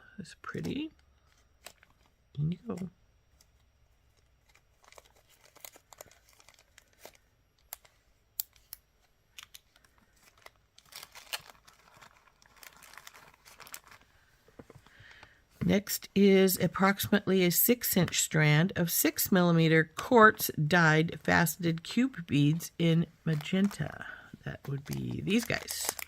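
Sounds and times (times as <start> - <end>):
packaging crinkling and rustling: 0.5 - 15.4, 21.4 - 26.0.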